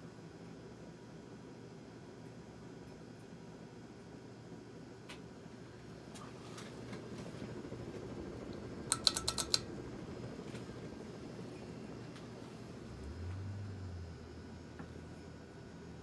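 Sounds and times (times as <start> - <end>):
ceiling fan whooshing: 5.4 - 16.0
sharp clicks: 8.5 - 9.7.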